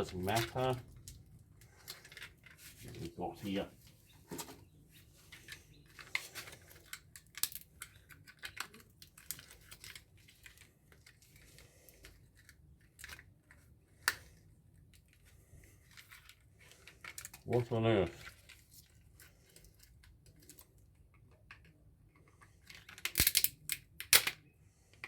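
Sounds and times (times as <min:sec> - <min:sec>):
plastic and metal parts clicking: 0:00.0 - 0:02.7, 0:05.3 - 0:25.0.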